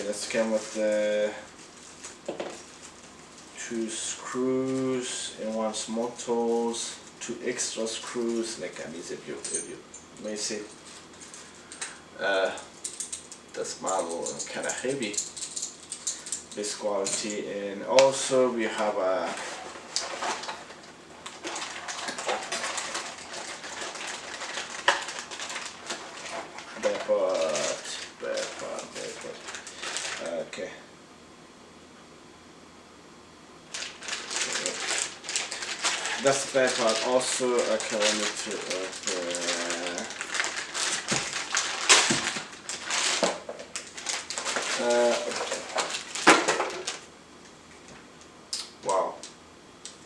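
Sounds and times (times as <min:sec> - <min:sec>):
packaging rustling: 0:19.1 - 0:30.4, 0:33.7 - 0:47.1.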